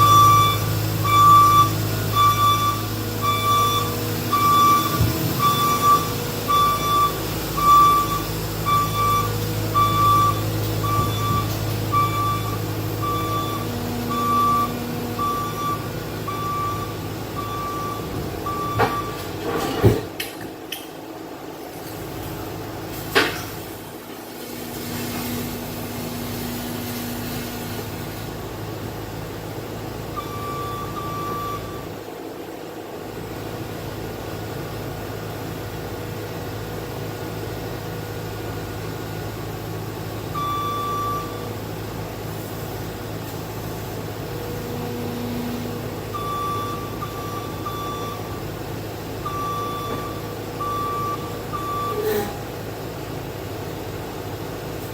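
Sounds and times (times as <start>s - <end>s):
backup alarm beeps: 0.0s - 19.3s, 30.2s - 32.0s, 40.3s - 41.6s, 44.7s - 48.5s, 49.2s - 52.2s
diesel engine running: 0.0s - 54.9s.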